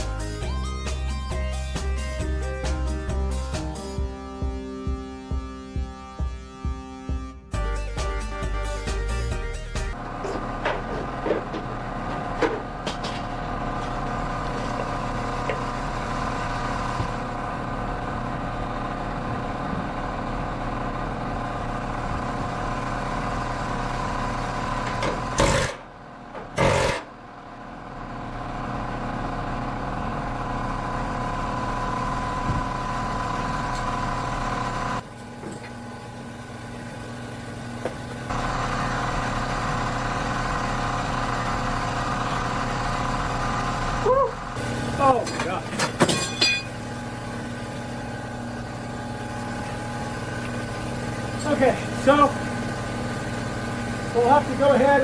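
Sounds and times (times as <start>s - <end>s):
machine humming: 29.6s - 55.0s.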